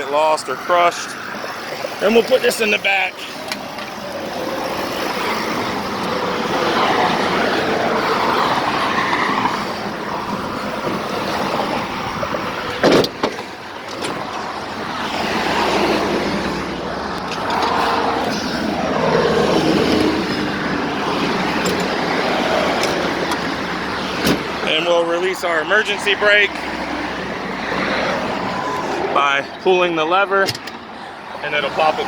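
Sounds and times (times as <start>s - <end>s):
highway traffic rushing past: 0.0s - 32.0s.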